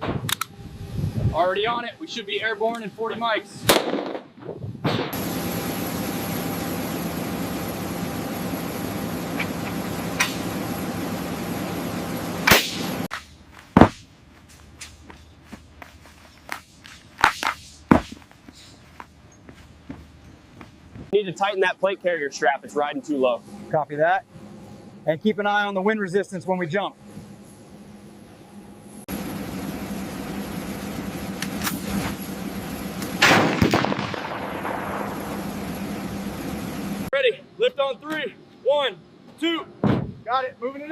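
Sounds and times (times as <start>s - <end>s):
low hum: 0.0s - 37.6s
engine running: 5.0s - 37.1s.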